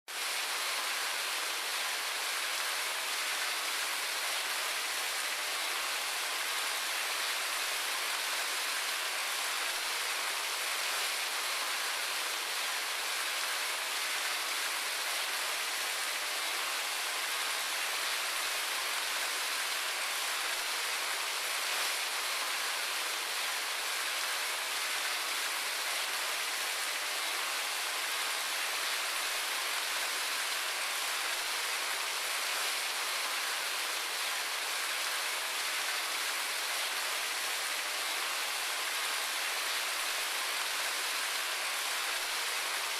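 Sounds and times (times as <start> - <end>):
fountain water trickling: 0.2 - 42.9.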